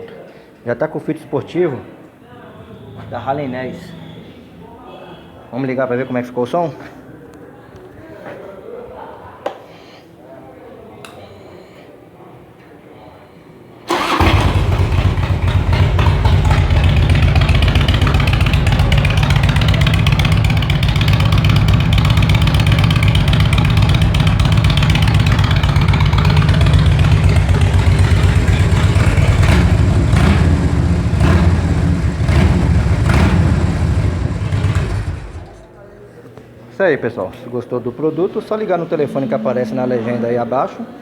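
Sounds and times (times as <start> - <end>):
sharp exhaust cracks: 13.9 - 35.7
motorcycle engine idling: 13.9 - 35.8.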